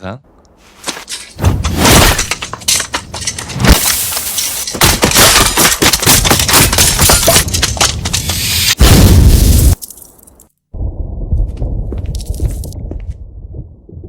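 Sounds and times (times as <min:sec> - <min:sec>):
crashes and breaking: 0:00.9 - 0:10.5.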